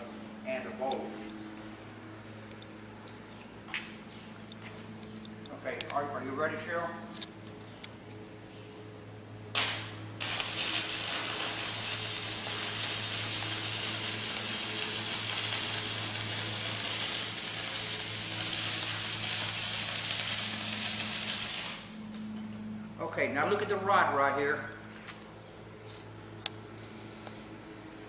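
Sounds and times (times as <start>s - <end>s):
welding arc strike: 9.5s - 22.1s
welding arc crackling sizzle: 9.5s - 22.3s.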